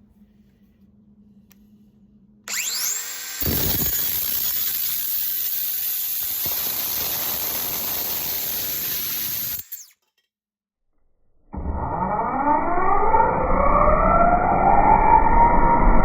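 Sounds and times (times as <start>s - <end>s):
whining sound: 2.5s - 9.9s, 11.5s - 16.0s
abrasive wheel cutting: 2.5s - 10.0s.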